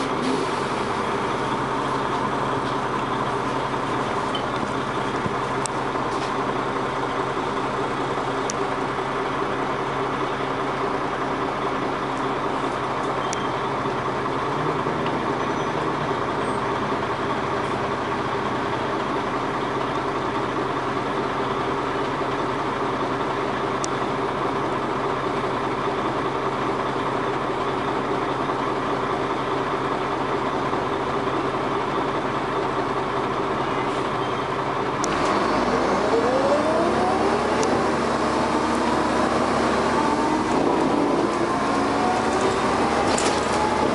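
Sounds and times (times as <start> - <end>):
bus engine idling: 0.0 - 43.9.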